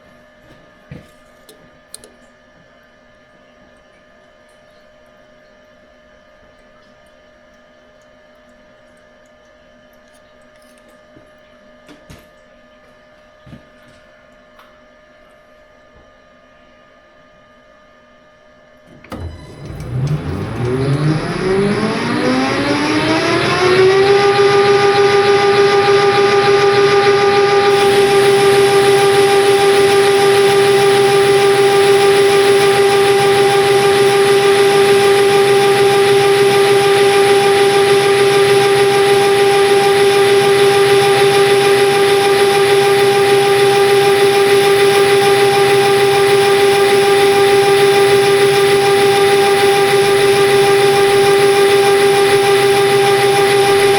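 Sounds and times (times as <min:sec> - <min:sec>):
lathe motor whine: 0:18.9 - 0:53.9.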